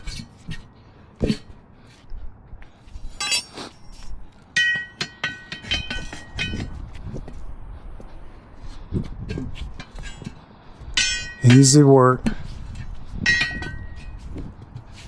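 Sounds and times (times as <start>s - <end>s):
metal tools clinking on wheel: 3.2s - 6.8s, 11.0s - 12.0s, 13.2s - 14.2s.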